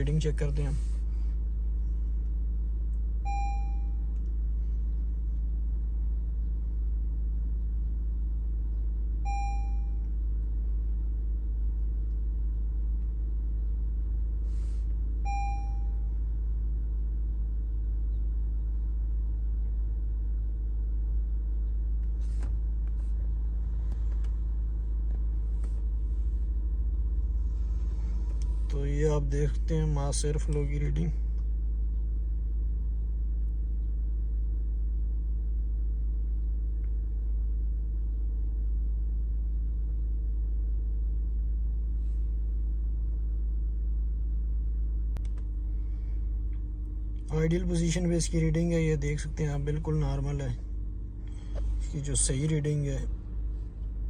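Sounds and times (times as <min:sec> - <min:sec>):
car engine idling: 0:00.0 - 0:54.0
short electronic beep: 0:03.3 - 0:04.0, 0:09.3 - 0:10.0, 0:15.3 - 0:16.0.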